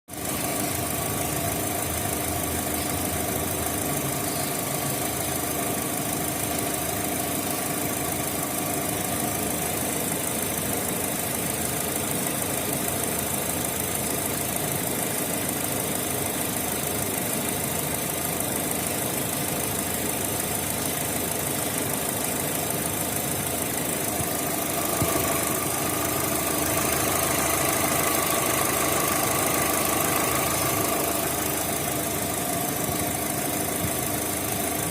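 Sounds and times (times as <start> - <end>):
engine idling with a misfire: 0.1 - 34.9.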